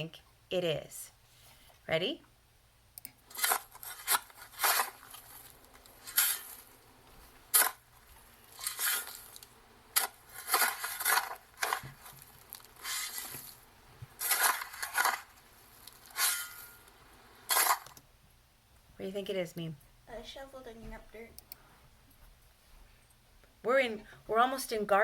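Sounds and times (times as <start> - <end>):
shovel digging in dirt: 3.3 - 6.7, 7.5 - 13.6, 14.2 - 16.8, 17.5 - 18.0.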